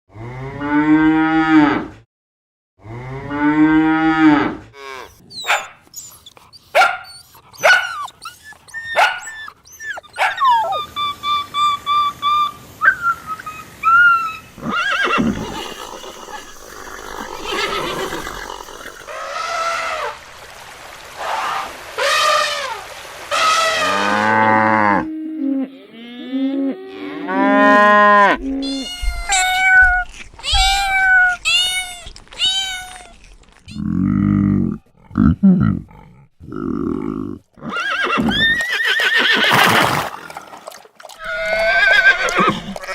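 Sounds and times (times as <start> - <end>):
animal cries: 4.9 - 20.2, 26.9 - 34.1, 41.2 - 42.9
steady high animal call: 4.9 - 20.2, 26.7 - 33.9
cattle mooing: 14.6 - 19.7.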